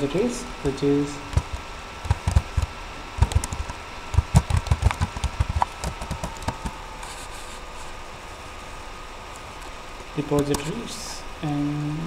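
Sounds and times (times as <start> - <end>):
computer keyboard typing: 1.3 - 6.7.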